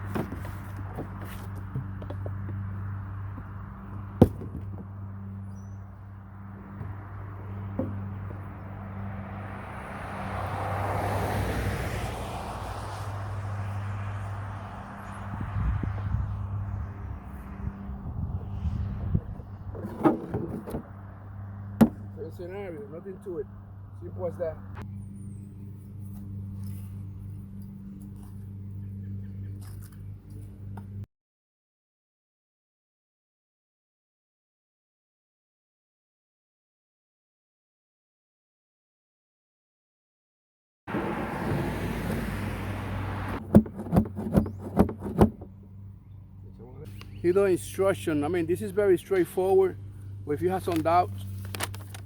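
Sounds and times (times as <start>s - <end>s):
car passing by: 8.5s - 19.4s, 40.9s - 43.4s.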